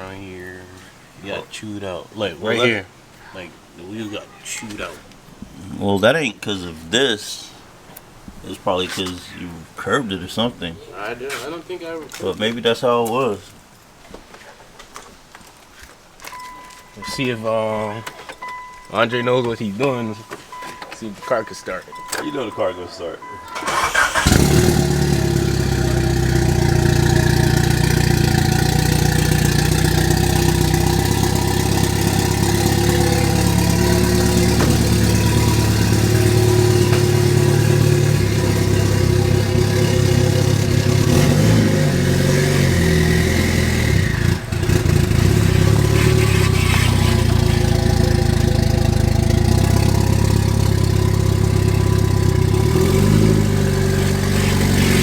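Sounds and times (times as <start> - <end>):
car engine idling: 16.8 - 55.0.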